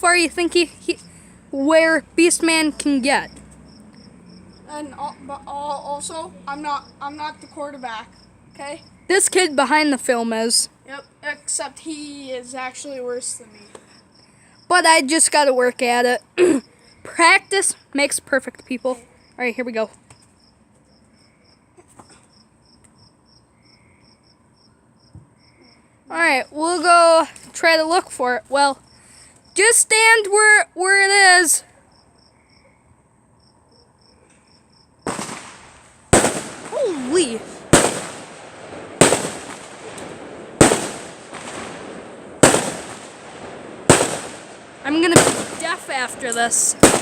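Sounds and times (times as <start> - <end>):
crickets chirping: 0.0 - 47.0
loud fireworks bangs with echo: 35.1 - 47.0.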